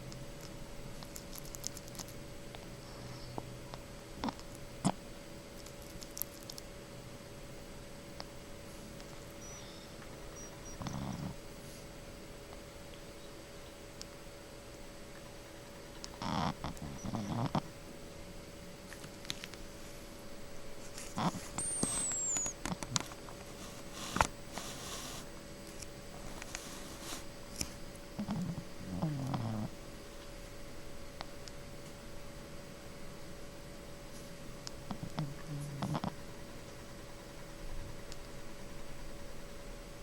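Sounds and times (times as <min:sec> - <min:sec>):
faint steady hum: 0:00.0 - 0:40.0
recording hiss: 0:06.4 - 0:40.0
chicken snoring: 0:09.4 - 0:11.4, 0:16.2 - 0:17.7, 0:21.2 - 0:22.4, 0:28.2 - 0:29.8, 0:34.9 - 0:36.2
thin high whistle: 0:21.5 - 0:22.6.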